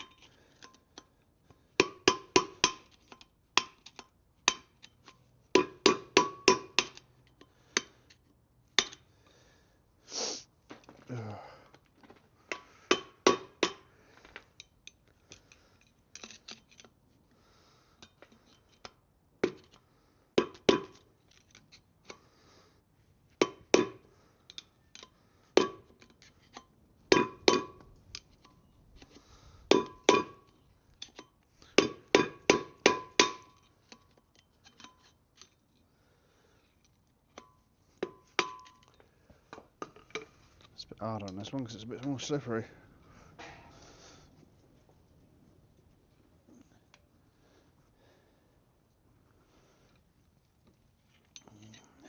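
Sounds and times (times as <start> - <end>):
hammer striking metal: 5.6 - 7.0, 31.8 - 33.5.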